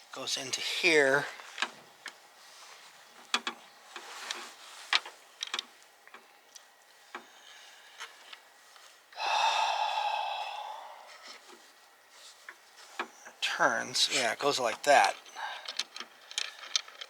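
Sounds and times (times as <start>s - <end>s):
plastic parts clicking and tapping: 14.7s - 17.0s.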